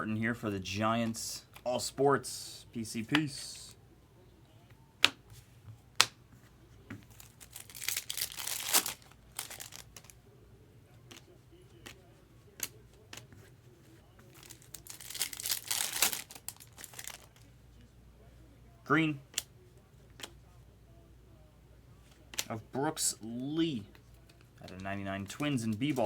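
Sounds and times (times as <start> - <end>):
wrappers crinkling: 7.1 - 10.2, 14.2 - 17.5
cards clicking: 11.1 - 12.0, 22.2 - 22.5.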